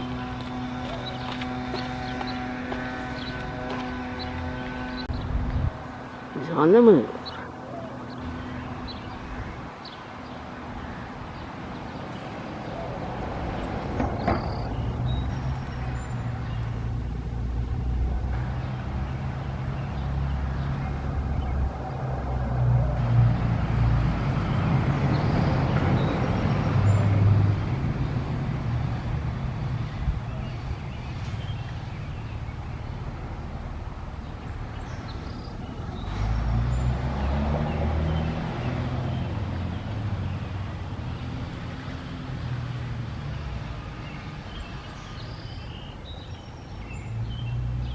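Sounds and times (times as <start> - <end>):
vehicle engine running: 0.0 - 9.6
road noise: 0.0 - 47.9.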